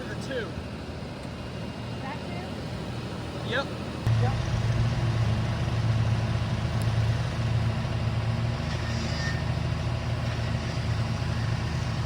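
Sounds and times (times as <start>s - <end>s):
tractor engine chugging: 3.5s - 12.0s.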